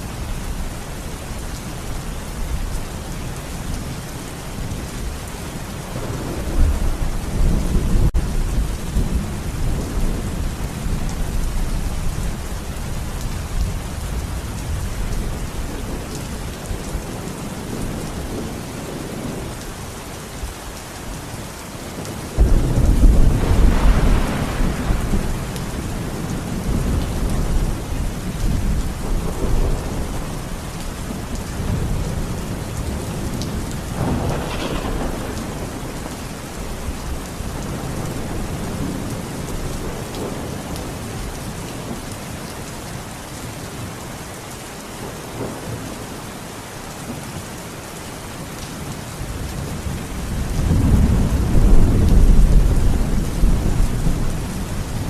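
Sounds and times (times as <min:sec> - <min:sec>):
steady rain: 0:00.0 - 0:55.0
rolling thunder: 0:05.7 - 0:12.4, 0:22.0 - 0:41.3, 0:49.4 - 0:55.0.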